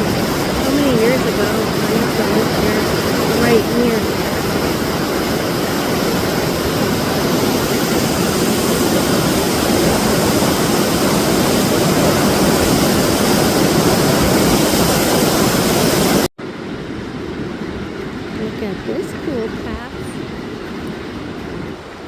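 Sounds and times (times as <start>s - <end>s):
river rapids rushing: 0.0s - 16.3s.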